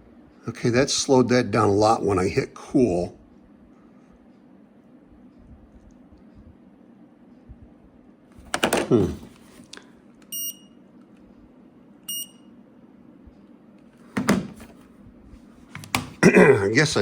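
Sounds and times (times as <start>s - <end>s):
steady low hum: 0.0s - 17.0s
short high beeps: 10.3s - 10.8s, 12.1s - 12.5s.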